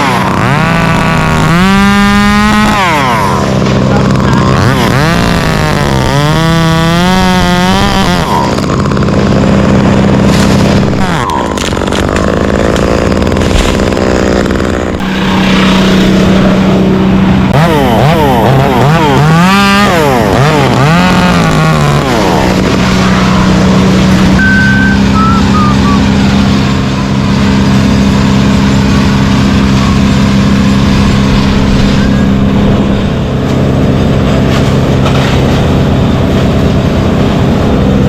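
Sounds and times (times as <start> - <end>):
engine revving: 0.0 - 38.0
steady engine drone: 0.0 - 38.0.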